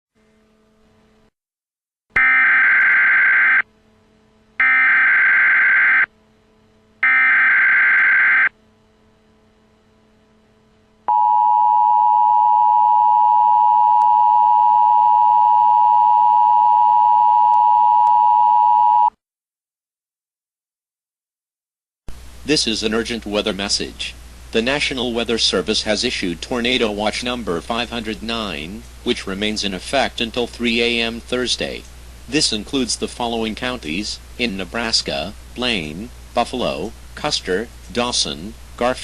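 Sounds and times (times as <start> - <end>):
two-tone attention signal: 7.0 - 8.5.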